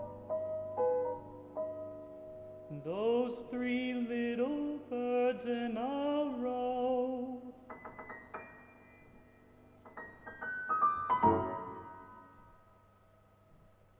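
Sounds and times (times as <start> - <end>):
solo piano: 0.0 - 13.9
tenor singing: 2.7 - 7.7.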